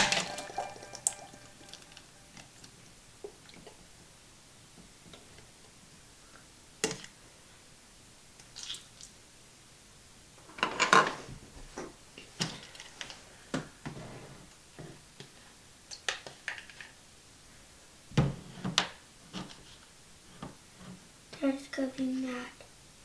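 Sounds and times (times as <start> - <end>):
small objects knocking and clattering: 0.0 - 2.4.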